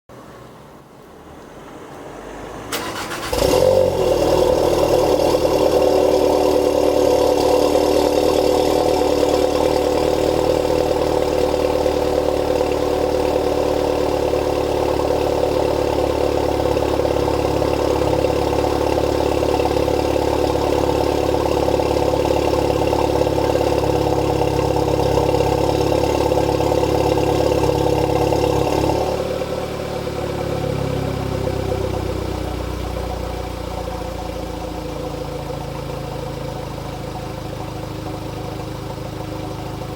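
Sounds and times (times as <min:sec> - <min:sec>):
engine cranking: 0:02.7 - 0:03.6
car engine loud fast idle: 0:02.8 - 0:39.9.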